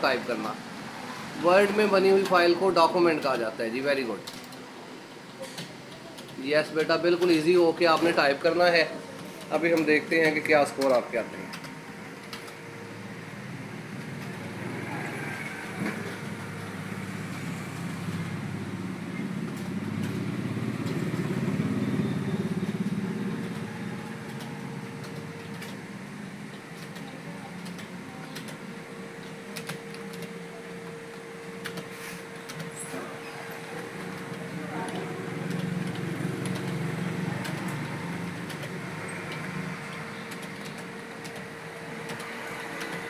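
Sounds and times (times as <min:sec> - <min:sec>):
steady hum: 0:00.0 - 0:43.0
keyboard keys clicking: 0:09.2 - 0:12.6, 0:15.8 - 0:32.8, 0:33.7 - 0:43.0.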